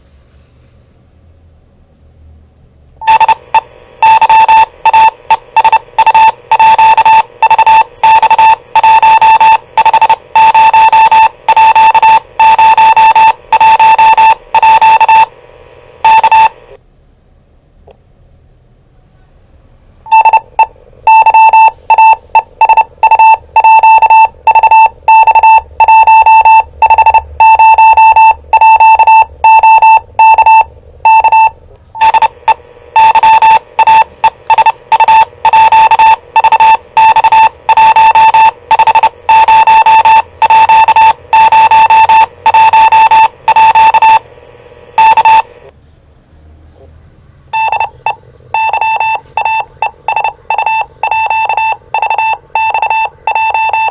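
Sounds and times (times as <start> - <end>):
morse code beeps from radio: 3.0 - 15.3, 16.0 - 16.6, 20.1 - 44.2, 45.0 - 45.5, 47.6 - 53.9.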